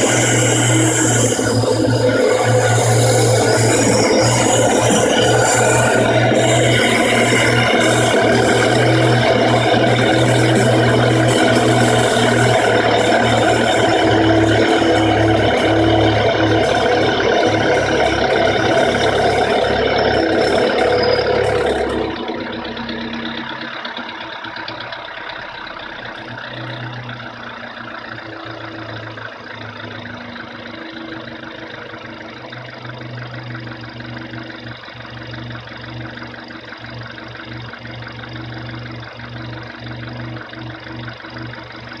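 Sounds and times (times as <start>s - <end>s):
car engine idling: 0.0s - 42.0s.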